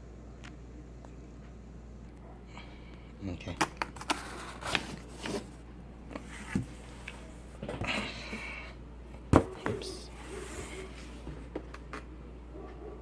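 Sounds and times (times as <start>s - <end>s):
cardboard rubbing: 4.1s - 5.6s.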